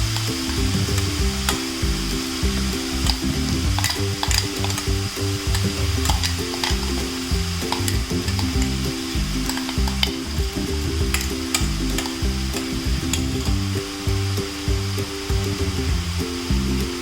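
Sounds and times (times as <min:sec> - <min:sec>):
food sizzling in a pan: 0:00.0 - 0:17.0
spoon clicking against pan: 0:03.0 - 0:08.7, 0:09.4 - 0:10.2, 0:11.1 - 0:13.3.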